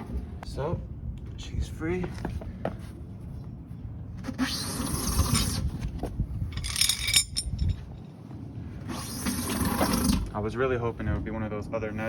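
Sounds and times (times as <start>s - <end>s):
metallic clinks: 6.5s - 8.0s.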